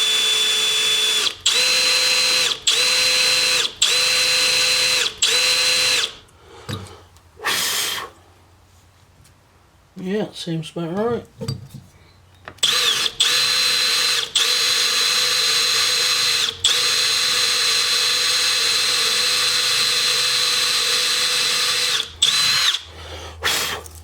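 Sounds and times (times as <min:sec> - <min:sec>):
electric drill whining: 0:00.0 - 0:06.2, 0:07.4 - 0:08.0, 0:12.6 - 0:23.8.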